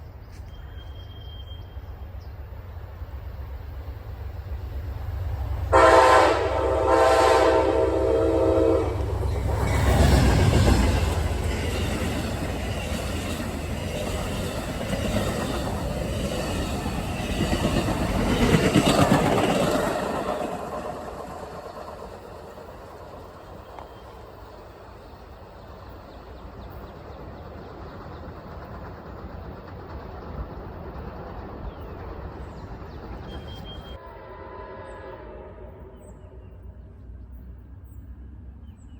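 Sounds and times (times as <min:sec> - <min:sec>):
train horn: 0:05.7 - 0:09.7, 0:33.4 - 0:36.8
train wheels rolling: 0:07.4 - 0:34.0.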